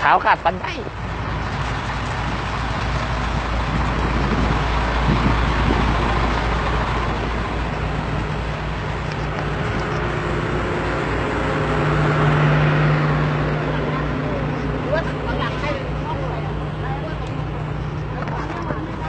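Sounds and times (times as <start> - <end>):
heavy diesel engines rumbling: 0.0 - 19.0.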